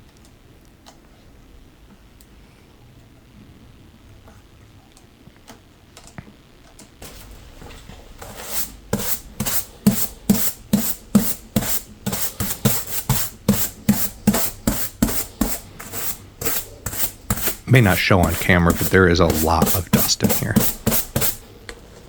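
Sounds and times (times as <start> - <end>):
hand rubbing guitar wood: 7.0 - 21.4.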